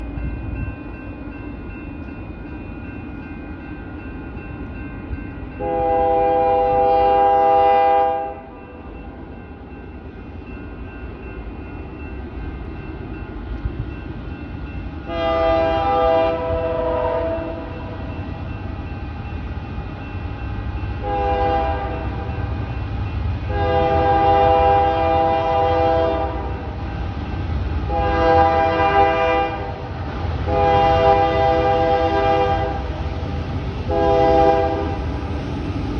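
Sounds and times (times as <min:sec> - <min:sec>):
train rumble: 0:00.0 - 0:35.9
locomotive air horn blasts: 0:05.6 - 0:08.6, 0:15.1 - 0:18.0, 0:21.0 - 0:22.3, 0:23.5 - 0:26.6, 0:27.9 - 0:29.8, 0:30.5 - 0:33.0, 0:33.9 - 0:35.0.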